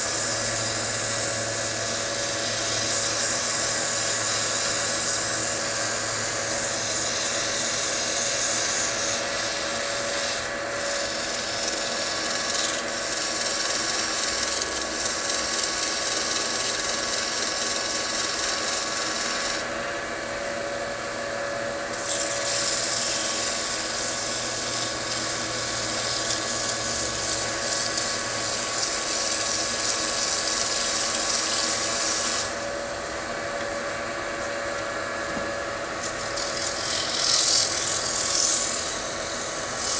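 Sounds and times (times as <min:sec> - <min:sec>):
wood lathe motor whine: 0:00.0 - 0:39.9
high rubbing hiss on wood: 0:22.1 - 0:32.6, 0:36.1 - 0:39.9.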